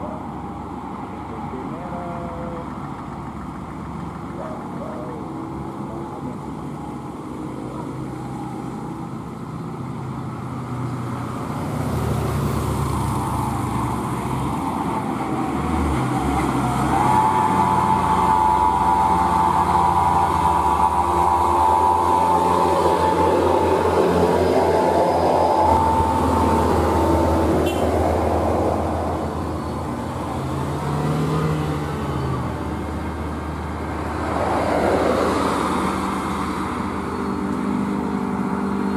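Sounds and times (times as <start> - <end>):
truck engine labouring uphill: 0.0 - 38.9
steady high whine: 16.8 - 30.1.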